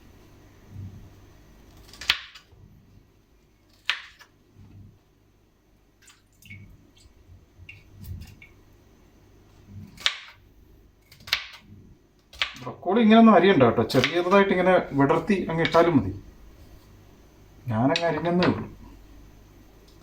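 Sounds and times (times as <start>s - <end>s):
knife chopping on a board: 11.1s - 11.6s, 13.9s - 14.3s.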